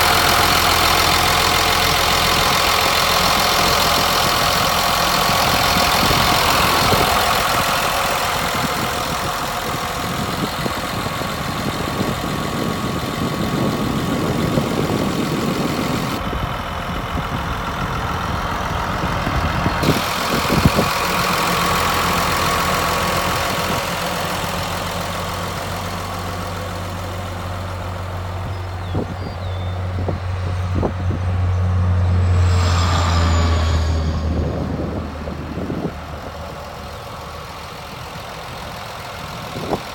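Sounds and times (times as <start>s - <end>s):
dozer diesel engine running: 0.0s - 39.9s
deep hum: 28.4s - 38.0s.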